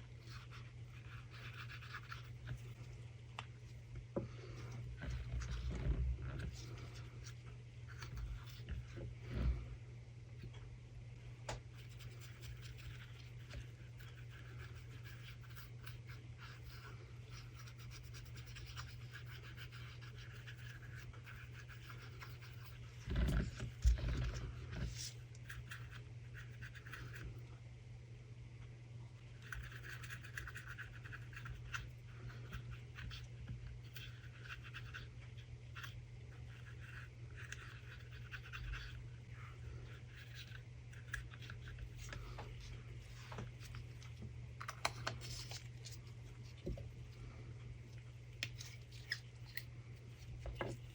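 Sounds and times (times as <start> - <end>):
brush scratching resin pieces: 0.0 - 3.1, 11.7 - 27.3, 29.4 - 44.2, 44.9 - 47.3
low steady hum: 0.0 - 50.9.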